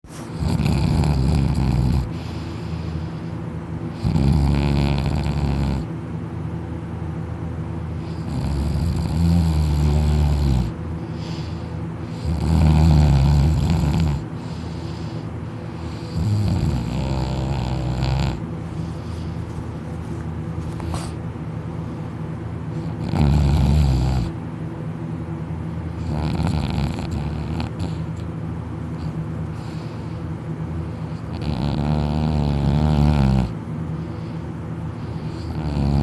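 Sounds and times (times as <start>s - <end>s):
person snoring loudly: 0.4s - 2.2s, 4.0s - 5.9s, 8.1s - 10.7s, 12.2s - 14.2s, 16.0s - 18.4s, 23.0s - 24.4s, 26.0s - 28.1s, 31.3s - 33.6s, 35.4s - 36.0s
quiet breathing: 1.8s - 4.2s, 10.7s - 12.5s, 14.2s - 16.4s, 17.8s - 21.2s, 28.9s - 31.4s, 33.8s - 36.0s.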